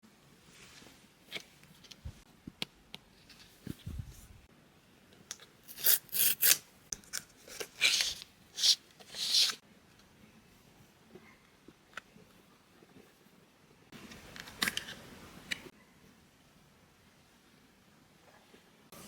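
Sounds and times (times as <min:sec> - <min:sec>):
packaging rubbing and tearing: 0:05.7 - 0:06.6.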